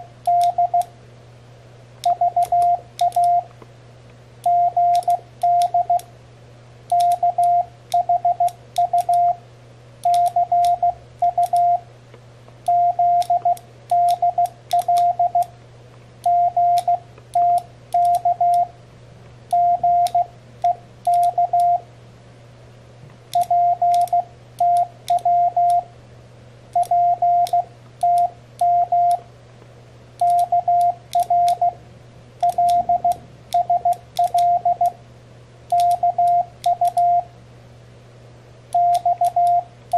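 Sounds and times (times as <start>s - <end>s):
switch clicks: 0.2s - 0.9s, 2.0s - 3.7s, 4.4s - 6.1s, 6.9s - 9.3s, 10.0s - 11.7s, 12.5s - 15.5s, 16.2s - 18.7s, 19.5s - 21.8s, 23.2s - 25.8s, 26.8s - 29.2s, 30.2s - 31.8s, 32.4s - 35.0s, 35.7s - 37.2s, 38.7s - 39.6s
morse code beeping: 0.3s - 0.9s, 2.1s - 3.5s, 4.4s - 6.0s, 6.9s - 9.4s, 10.0s - 11.8s, 12.7s - 15.5s, 16.2s - 18.7s, 19.5s - 21.8s, 23.4s - 25.9s, 26.8s - 29.2s, 30.2s - 31.8s, 32.4s - 35.0s, 35.7s - 37.3s, 38.8s - 39.7s.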